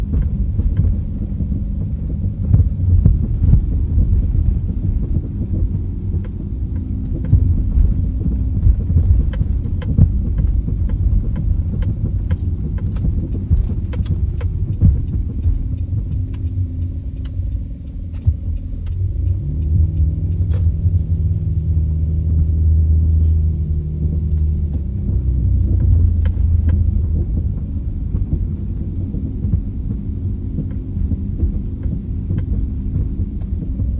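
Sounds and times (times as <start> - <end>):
deep steady drone: 0.0 - 33.9
low vehicle rumble: 0.0 - 33.9
sharp clicks and knocks: 0.0 - 33.9.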